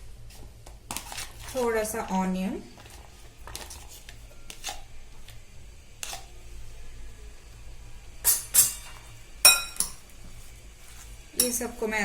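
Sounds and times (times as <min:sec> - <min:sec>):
utensil clinking against bowl: 0:08.2 - 0:10.0.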